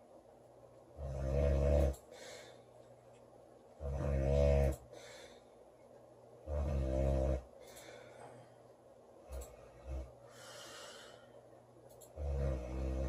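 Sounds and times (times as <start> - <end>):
loud low snore: 1.0 - 2.0, 3.8 - 4.8, 6.4 - 7.5, 12.1 - 13.0
soft breath: 2.0 - 3.0, 4.8 - 5.8, 7.5 - 8.8, 9.4 - 11.6.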